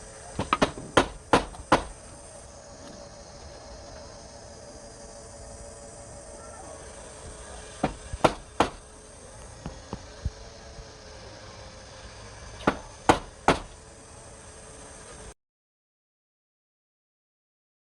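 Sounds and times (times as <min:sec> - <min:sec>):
faint steady hum: 0:00.0 - 0:15.4
sharp knocks of hard objects: 0:00.4 - 0:02.0, 0:07.8 - 0:08.8, 0:12.6 - 0:13.8.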